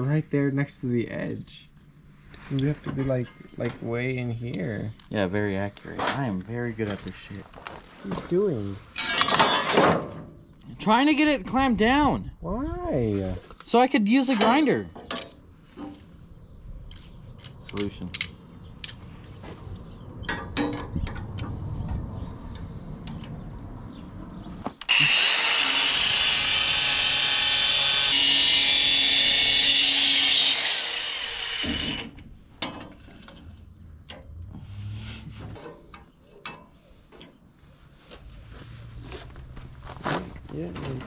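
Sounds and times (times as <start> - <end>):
angle grinder on steel: 24.8 - 32.3.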